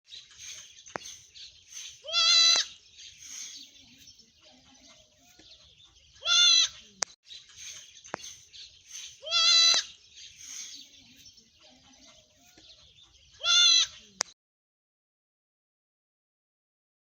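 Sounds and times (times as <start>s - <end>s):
livestock bleating: 2.0s - 2.7s, 6.2s - 6.8s, 9.2s - 9.9s, 13.4s - 14.0s.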